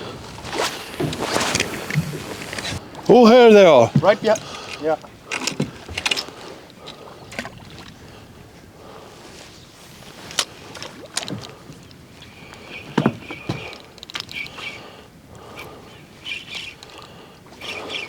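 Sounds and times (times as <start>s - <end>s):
water noise: 0.0s - 2.9s
wind: 0.0s - 18.0s.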